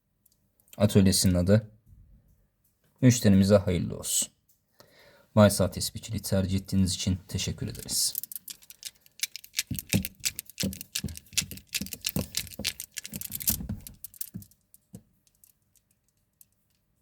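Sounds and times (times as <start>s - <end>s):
prayer beads clacking: 7.3s - 17.0s.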